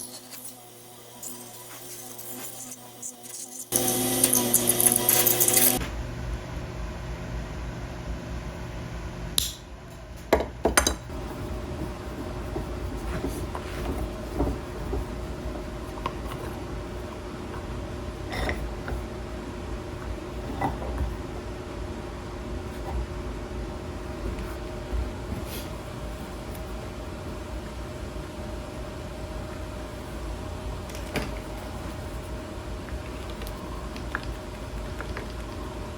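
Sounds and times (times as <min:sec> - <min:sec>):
machine humming: 0:00.0 - 0:10.1.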